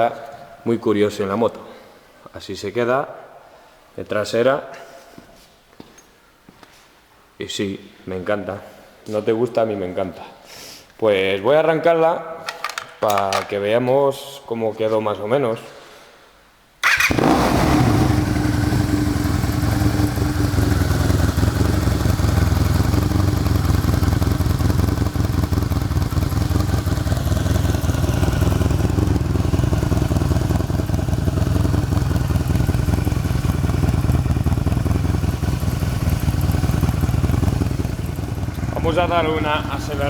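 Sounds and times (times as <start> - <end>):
motorcycle engine starting and idling: 16.8 - 40.0.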